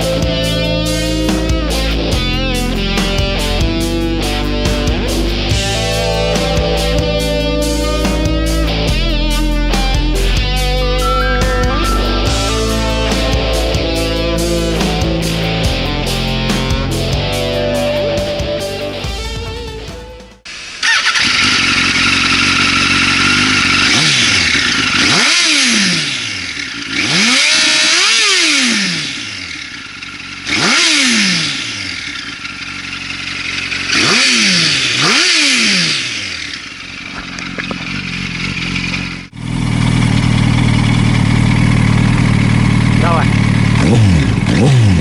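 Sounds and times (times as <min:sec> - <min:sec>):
guitar music: 0:00.0 - 0:20.5
motorcycle engine revving: 0:00.0 - 0:45.0
motorcycle idling: 0:00.0 - 0:45.0.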